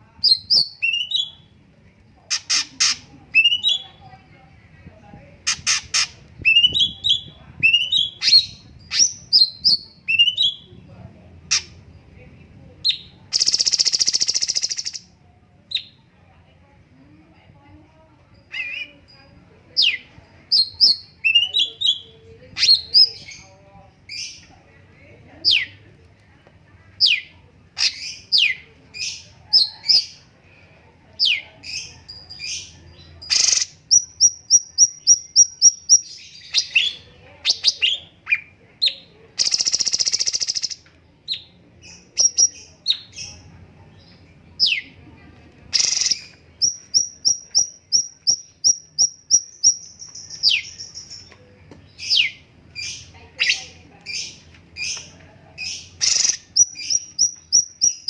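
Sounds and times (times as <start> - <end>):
songbird whistling: 45.8 - 51.2, 55.7 - 58.0.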